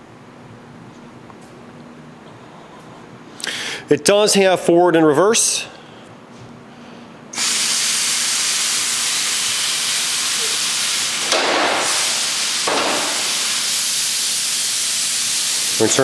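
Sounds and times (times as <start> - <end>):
air ratchet exhaust hiss: 7.4 - 16.0.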